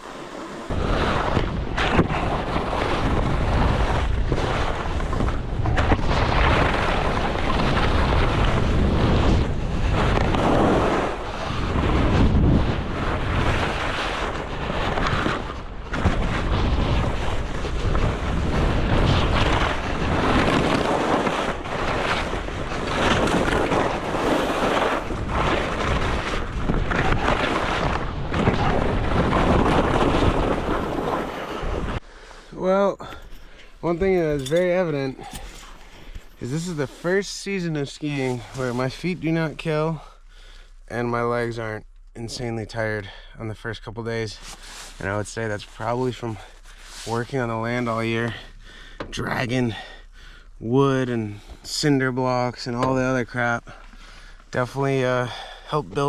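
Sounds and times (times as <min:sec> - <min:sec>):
skis running on snow: 0:00.0 - 0:32.0
wind rushing over microphone: 0:00.0 - 0:32.0.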